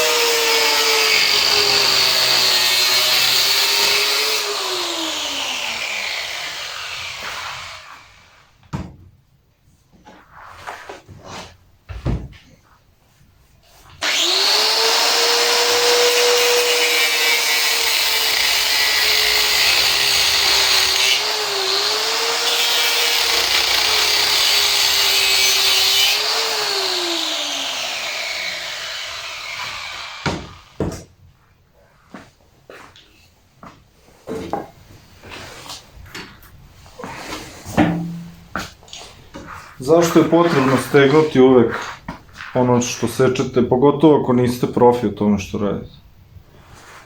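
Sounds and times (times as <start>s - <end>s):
angle grinder cutting metal: 0.0s - 8.3s, 14.0s - 30.8s.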